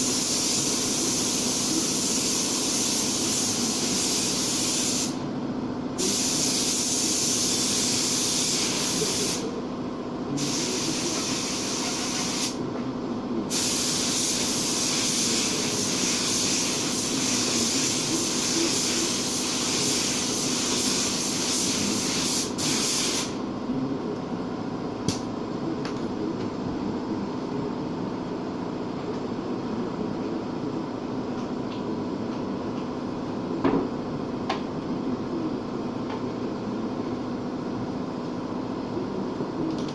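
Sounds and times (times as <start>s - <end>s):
paint spray gun hissing: 0.0s - 5.2s, 6.0s - 9.5s, 13.5s - 23.4s
steady machine hum: 0.0s - 39.9s.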